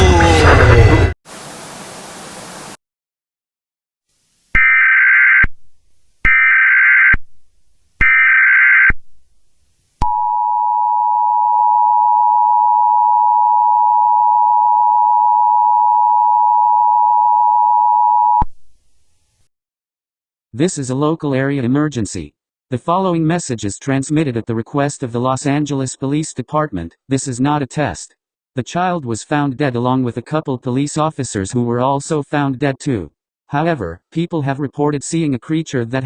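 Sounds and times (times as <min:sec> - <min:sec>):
static hiss: 0:01.3 - 0:02.8.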